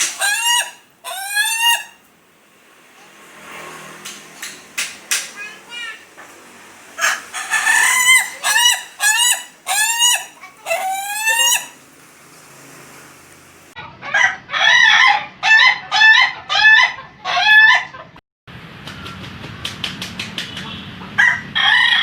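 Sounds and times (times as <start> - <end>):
rooster crowing in laughing style: 0.1 - 2.0, 7.0 - 11.8, 14.1 - 17.9, 21.2 - 22.0.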